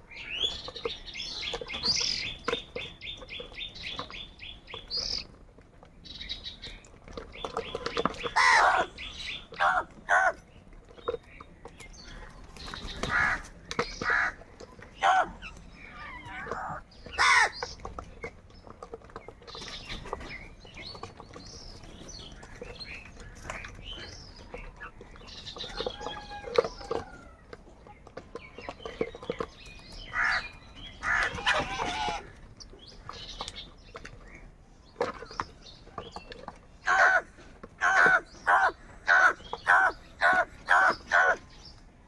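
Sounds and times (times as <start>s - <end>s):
soft bird calls: 0.0s - 42.0s
crows cawing: 8.4s - 8.9s, 13.0s - 14.4s, 16.2s - 17.6s, 30.1s - 30.4s, 31.0s - 32.3s, 36.8s - 41.4s.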